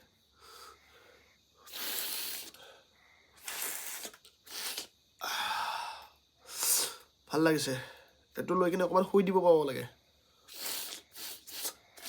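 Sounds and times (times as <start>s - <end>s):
person sniffing through congested nose: 1.6s - 2.7s, 3.4s - 5.0s, 6.4s - 7.1s, 10.4s - 12.0s.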